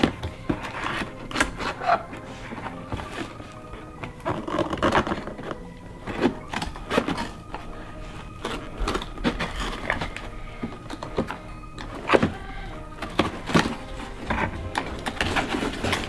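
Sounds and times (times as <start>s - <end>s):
cardboard and plastic rustling: 0.0s - 16.0s.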